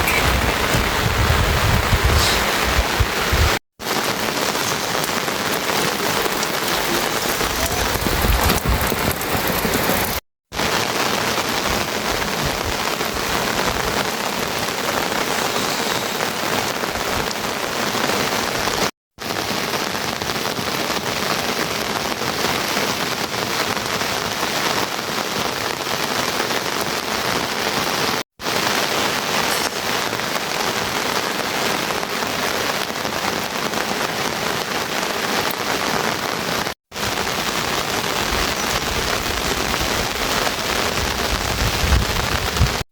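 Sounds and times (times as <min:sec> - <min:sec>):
heavy rain hiss: 0:00.0 - 0:10.0, 0:10.6 - 0:18.6, 0:28.4 - 0:33.8.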